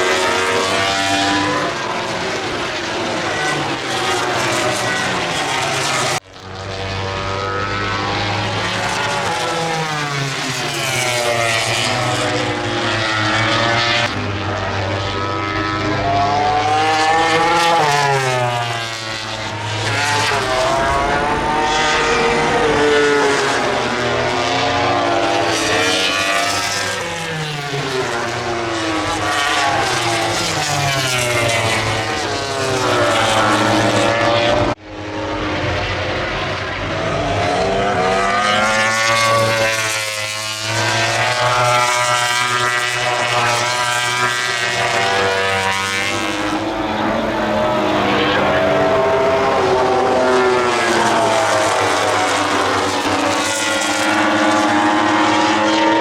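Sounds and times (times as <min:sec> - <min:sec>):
racing motorcycles revving: 0:00.0 - 0:56.0.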